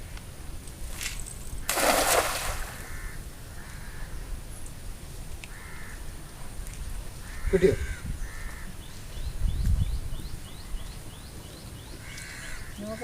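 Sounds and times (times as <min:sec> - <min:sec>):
cast net splashing into water: 0:01.0 - 0:02.9
crows cawing: 0:02.6 - 0:04.1, 0:05.5 - 0:06.0, 0:07.2 - 0:08.7, 0:12.0 - 0:13.0.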